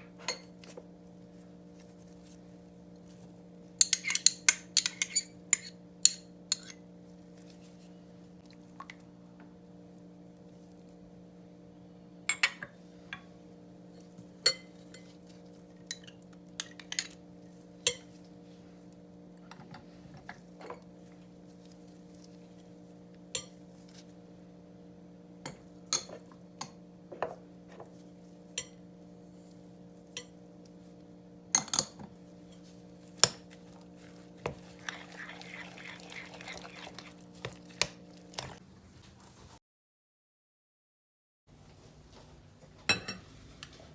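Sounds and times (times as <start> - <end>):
utensils clinking against dishes: 3.8 - 6.8
rhythmic scraping in a bowl: 32.6 - 38.6.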